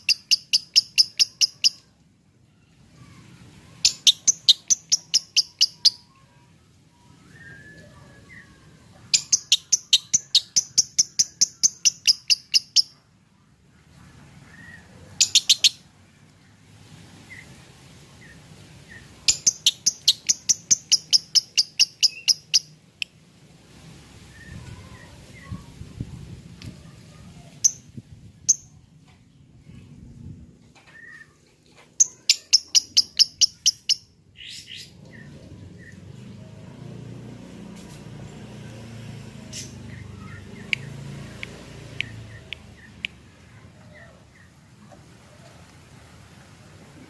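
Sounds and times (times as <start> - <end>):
bird chirping: 0.0 - 1.9, 3.8 - 13.0, 14.5 - 15.9, 18.2 - 23.2, 32.0 - 36.1, 39.4 - 44.6.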